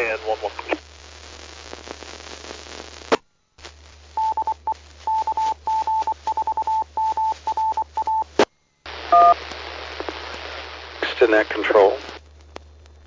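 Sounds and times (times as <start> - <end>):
radio receiver hiss: 0.0 - 13.0
morse code beeping tone: 4.2 - 8.3.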